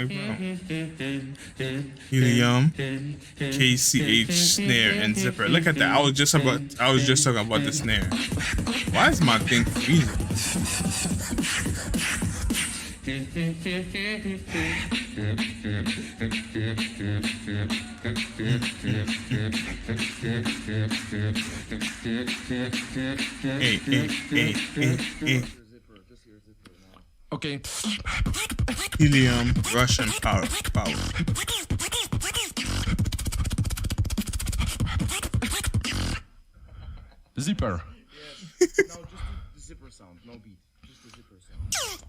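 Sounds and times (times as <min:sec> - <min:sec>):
person beatboxing: 0:02.2 - 0:02.7, 0:03.6 - 0:13.0, 0:14.5 - 0:25.6, 0:27.7 - 0:36.1.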